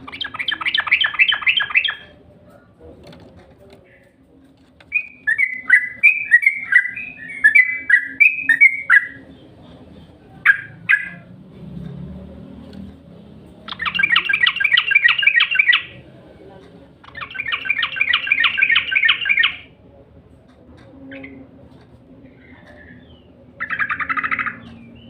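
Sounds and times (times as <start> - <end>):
bird chattering: 0.0 - 2.6, 4.9 - 11.3, 13.6 - 16.1, 16.9 - 19.8, 22.4 - 25.0
bird singing whistled notes: 4.9 - 9.2, 13.7 - 15.9.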